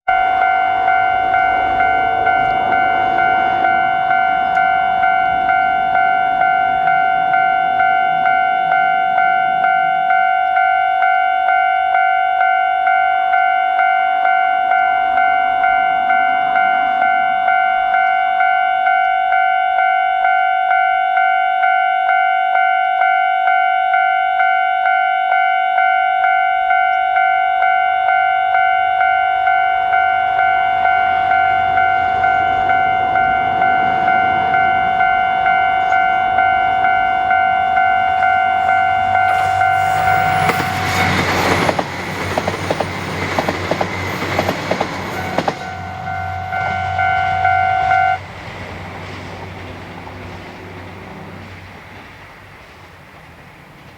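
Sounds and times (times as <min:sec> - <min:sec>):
broad rushing noise: 0:00.1 - 0:06.1, 0:30.6 - 0:52.8
level-crossing warning bell: 0:00.1 - 0:48.4.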